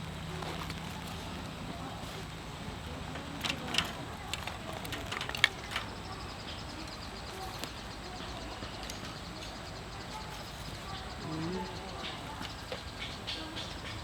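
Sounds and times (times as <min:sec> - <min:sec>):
outdoor background hiss: 0:00.0 - 0:14.0
sharp knocks and snaps: 0:03.2 - 0:06.0.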